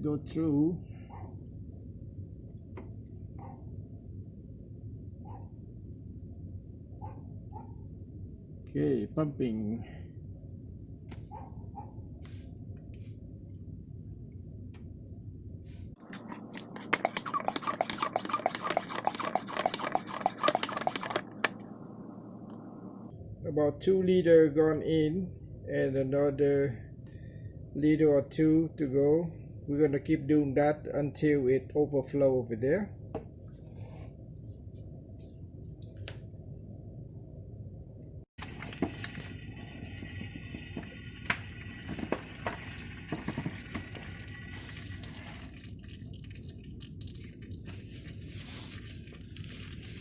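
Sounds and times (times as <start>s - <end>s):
hand pump squeaking strokes: 16.6s - 21.3s.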